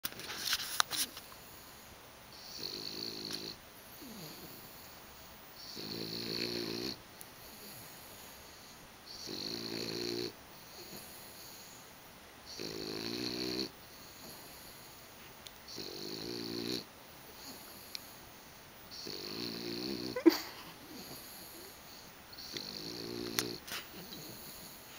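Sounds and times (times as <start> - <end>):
pet snoring: 2.4 - 5.0, 5.6 - 11.8, 12.5 - 14.9, 15.7 - 18.0, 18.9 - 24.9.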